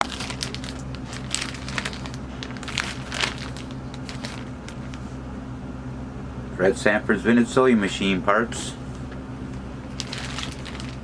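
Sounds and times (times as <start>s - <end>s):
crinkling and rustling handling: 0.0s - 5.2s, 9.0s - 11.0s
steady low hum: 0.0s - 11.0s.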